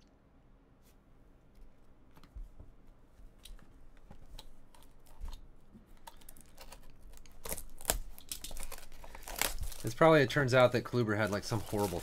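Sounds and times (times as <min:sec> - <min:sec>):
cards and plastic packaging handled: 0:03.4 - 0:12.0.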